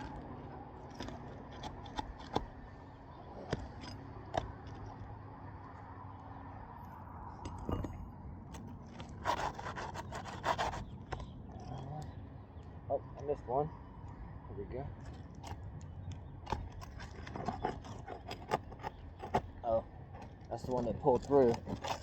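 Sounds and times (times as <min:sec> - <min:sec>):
scraping under roof shingles: 0:00.0 - 0:02.8, 0:08.6 - 0:11.2, 0:15.0 - 0:22.0
rasping strokes: 0:09.0 - 0:11.8, 0:16.5 - 0:22.0.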